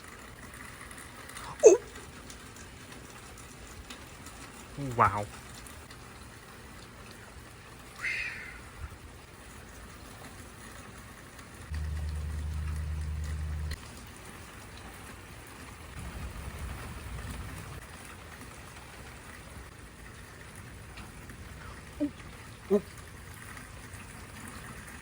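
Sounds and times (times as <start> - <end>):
steady rain: 0.0 - 25.0
loud low drone: 11.7 - 13.8
low rumble of thunder: 11.7 - 13.8, 16.0 - 17.8.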